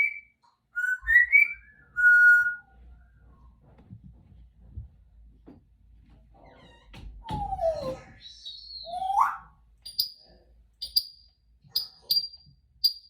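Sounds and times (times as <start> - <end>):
parrot whistling: 0.0 - 2.7, 8.2 - 10.1.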